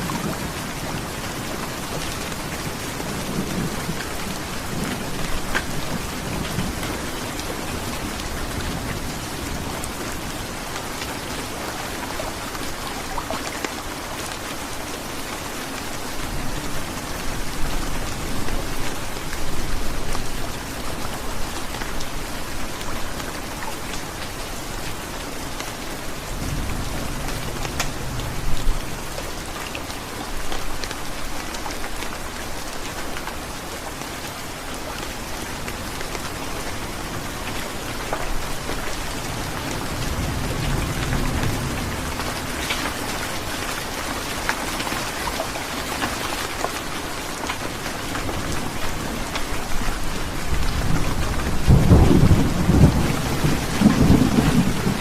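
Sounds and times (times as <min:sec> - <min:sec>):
heavy rain: 0:00.0 - 0:55.0
low thunder rumbling: 0:50.5 - 0:55.0.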